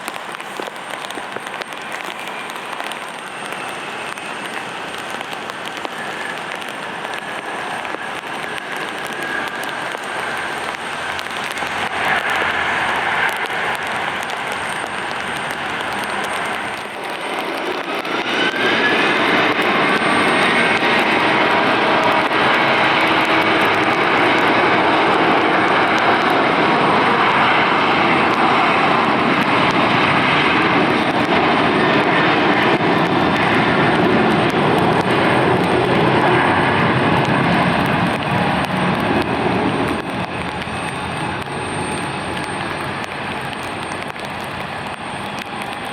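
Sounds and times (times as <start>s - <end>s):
jet engines spooling up: 0.0s - 45.9s.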